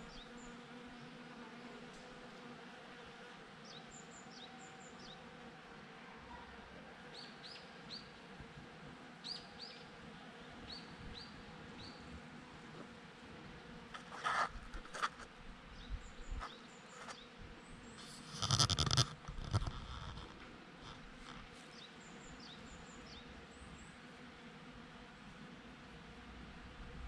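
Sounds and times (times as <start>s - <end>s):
bees buzzing: 16.1s - 25.8s.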